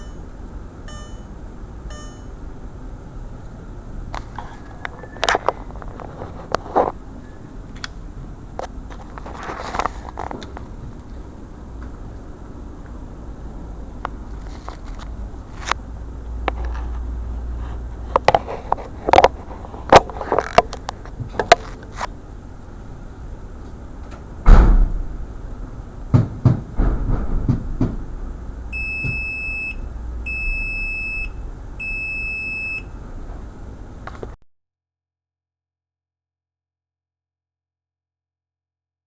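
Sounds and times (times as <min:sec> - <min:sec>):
electronic beeps: 0:00.0 - 0:00.3, 0:00.9 - 0:02.4
heavy thump: 0:24.4 - 0:25.2, 0:26.2 - 0:28.2.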